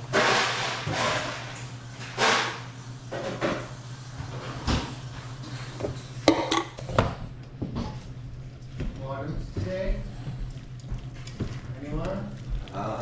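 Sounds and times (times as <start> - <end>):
steady low hum: 0.0 - 13.0
dishes and cutlery clattering: 6.3 - 7.1.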